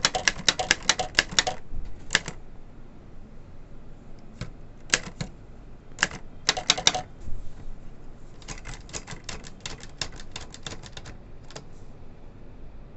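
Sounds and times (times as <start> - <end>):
typewriter keys clacking: 0.0 - 2.4, 4.4 - 5.3, 6.0 - 7.1, 8.3 - 11.7.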